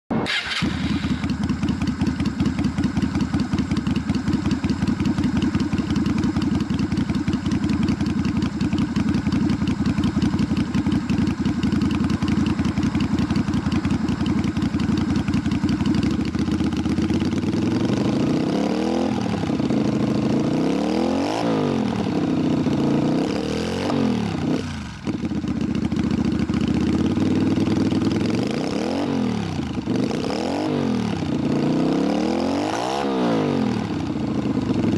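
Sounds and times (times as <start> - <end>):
motorcycle engine idling and revving: 0.1 - 34.9.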